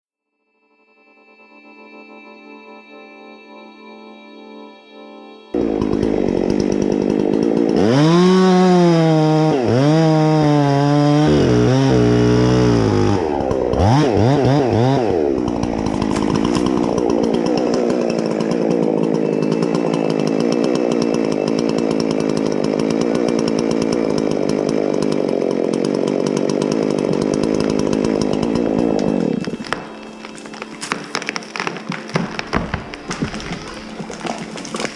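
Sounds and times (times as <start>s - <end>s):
chainsaw revving and cutting: 5.6s - 34.9s.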